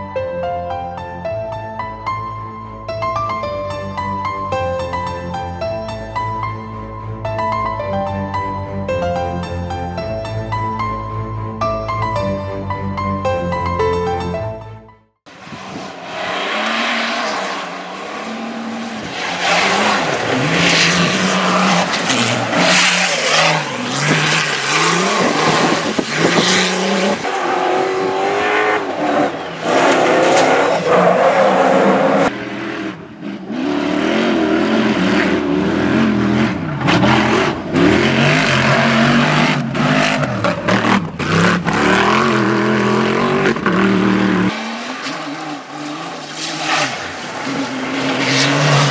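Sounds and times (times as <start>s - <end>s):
rally car engines revving: 15.3s - 48.9s
tyres on gravel: 15.9s - 27.3s.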